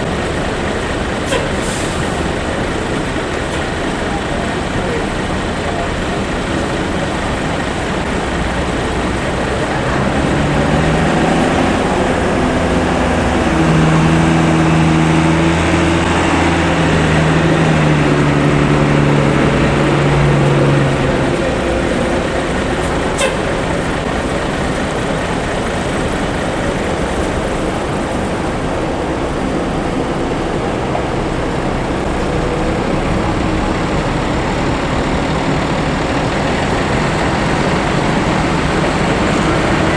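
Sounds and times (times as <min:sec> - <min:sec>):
traffic and engine noise: 0:00.0 - 0:39.9
bus musical horn: 0:01.2 - 0:02.0, 0:18.7 - 0:23.9.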